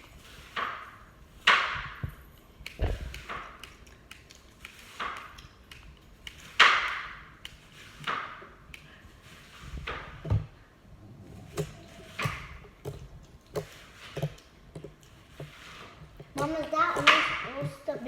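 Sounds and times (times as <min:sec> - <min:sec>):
slime squishing with wet pops: 0:02.6 - 0:09.0.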